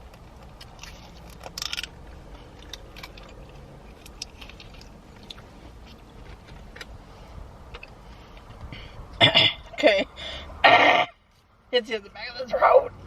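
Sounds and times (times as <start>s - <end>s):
person chewing food: 0.0s - 7.0s
crunchy rustle: 0.0s - 7.3s.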